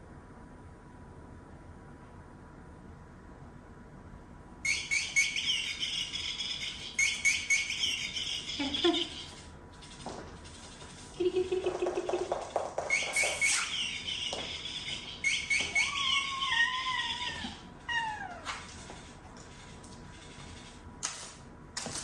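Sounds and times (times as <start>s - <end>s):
electronic bird chirps and call: 4.6s - 9.4s, 12.9s - 17.4s.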